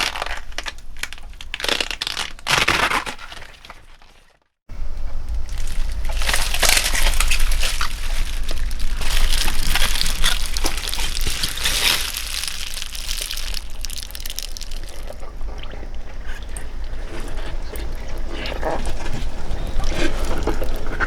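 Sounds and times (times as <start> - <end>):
water dripping and sloshing: 5.4 - 21.0
wet towel squelching: 5.6 - 15.2.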